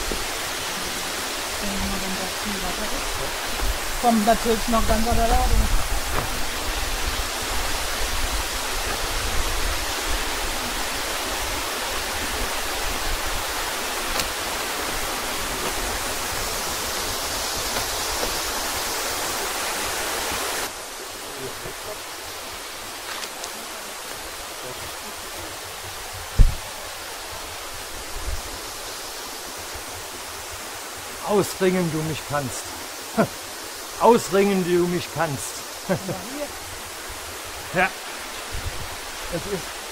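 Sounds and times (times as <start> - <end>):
waterfall rushing: 0.0 - 39.9
dull thump: 6.0 - 6.4.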